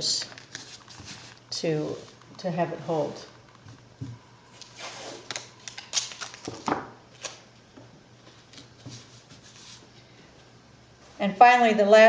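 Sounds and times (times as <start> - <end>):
tape and fabric rustling: 0.2 - 2.4.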